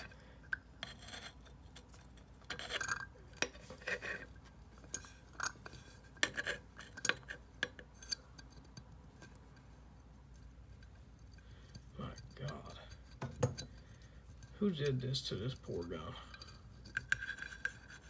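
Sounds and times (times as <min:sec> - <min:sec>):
metal tools clinking and scraping: 0:00.8 - 0:09.3.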